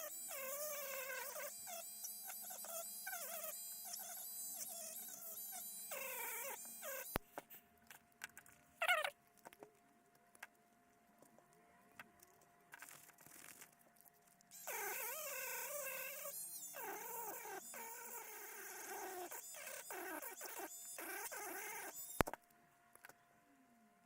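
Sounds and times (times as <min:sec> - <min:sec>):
rotary tool whine: 0:00.0 - 0:07.2, 0:14.5 - 0:22.4.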